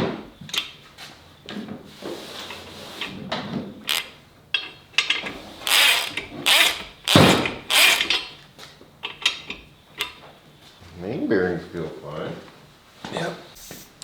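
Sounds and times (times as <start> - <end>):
ratchet wrench ratcheting: 3.9 - 8.4
sharp metal clicks: 3.9 - 8.4.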